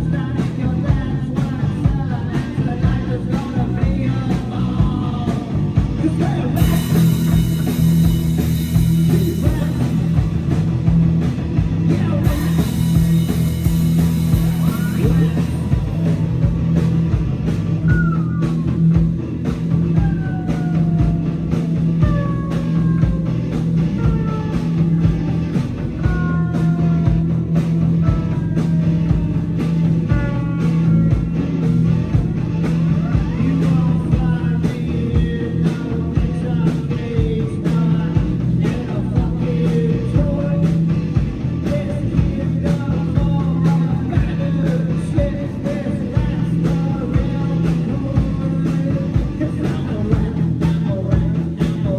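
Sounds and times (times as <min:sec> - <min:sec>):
live rock band playing: 0:00.0 - 0:51.9
descending lead lines: 0:03.4 - 0:25.9
drum beat: 0:03.8 - 0:23.2.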